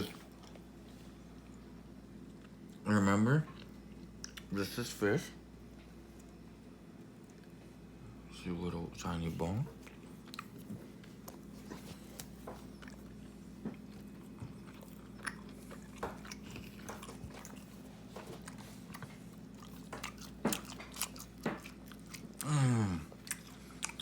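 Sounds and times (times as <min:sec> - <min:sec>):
person chewing jerky: 0:09.8 - 0:24.0.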